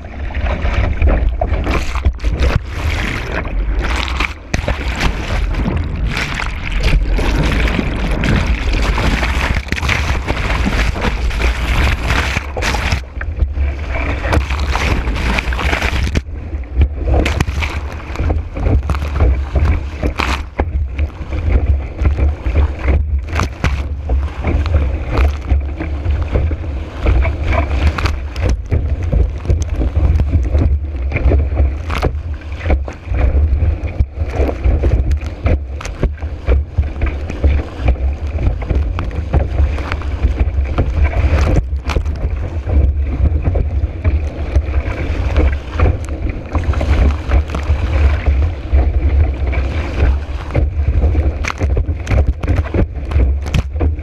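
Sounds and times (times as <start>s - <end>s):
board slapping on choppy water: 0.0s - 54.0s
water rushing past: 0.0s - 54.0s.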